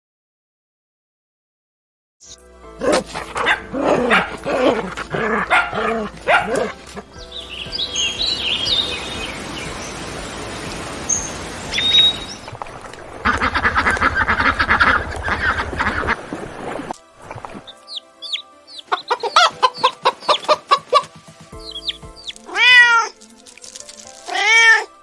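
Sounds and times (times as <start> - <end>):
dog barking: 2.8 - 7.1
high bird chirps: 7.1 - 12.6, 21.6 - 22.5
fowl calls: 13.2 - 16.8, 17.9 - 23.1.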